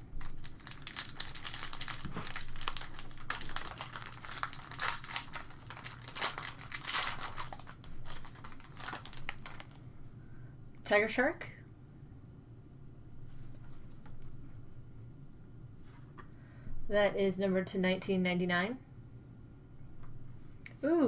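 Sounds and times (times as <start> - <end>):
wrapper crinkling and crackling: 0.0 - 9.8.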